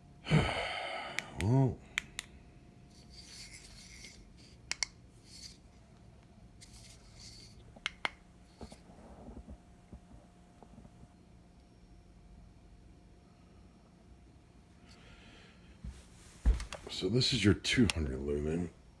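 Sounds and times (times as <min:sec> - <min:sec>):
flashlight rubbing and scraping: 0:02.9 - 0:04.6, 0:05.2 - 0:05.6, 0:06.6 - 0:07.6.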